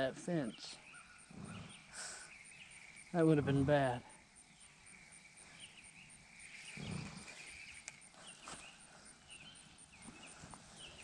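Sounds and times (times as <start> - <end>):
small birds chirping: 0.0 - 11.0
soft low rustle: 5.4 - 11.0.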